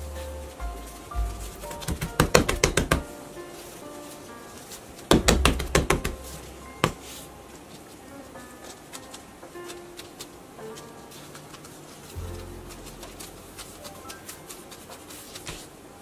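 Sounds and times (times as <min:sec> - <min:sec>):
low bass note: 0:12.2 - 0:13.6.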